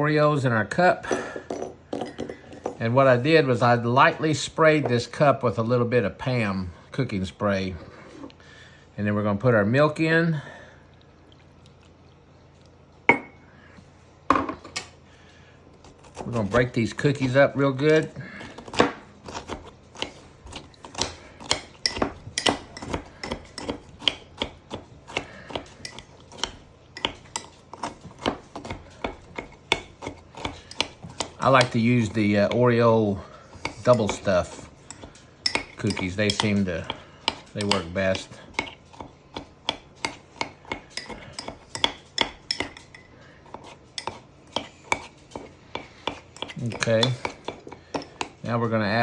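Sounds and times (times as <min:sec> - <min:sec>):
spoon clinking and scraping mug: 0:33.6 - 0:36.5, 0:41.0 - 0:48.3
spoon clinking against a mug: 0:34.9 - 0:36.5.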